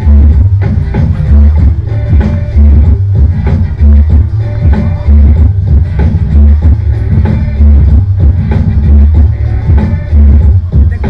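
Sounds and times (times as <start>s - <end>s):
electronic dance music: 0.0s - 11.0s.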